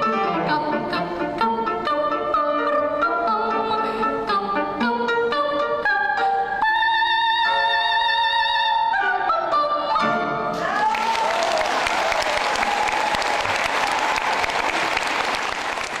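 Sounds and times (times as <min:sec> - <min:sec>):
classical music: 0:00.0 - 0:10.6
audience applauding: 0:10.6 - 0:16.0.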